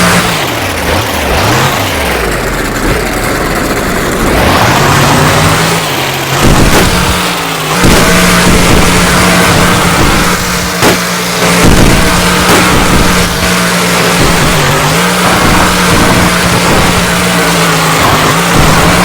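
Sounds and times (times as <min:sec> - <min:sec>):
truck engine revving: 0:00.0 - 0:19.0
sharp knocks: 0:06.3 - 0:19.0.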